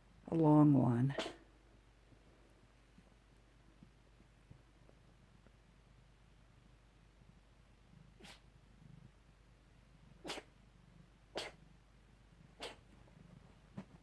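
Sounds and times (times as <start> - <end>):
cat coughing: 10.2 - 10.5, 11.4 - 11.6, 12.6 - 12.8.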